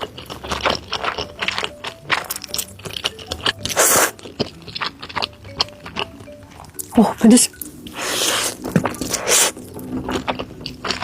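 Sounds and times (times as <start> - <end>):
wet mouth clicks and chewing: 0.0 - 11.0
noodle slurp: 3.7 - 4.4, 7.9 - 11.0.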